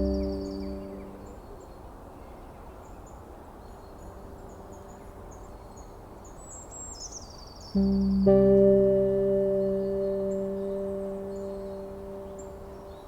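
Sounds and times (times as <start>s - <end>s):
bird descending trill: 0.0s - 1.2s, 7.8s - 13.0s
sustained music tones: 0.0s - 1.3s, 7.8s - 13.0s
faint high bird chirps: 0.0s - 1.4s, 6.4s - 13.0s.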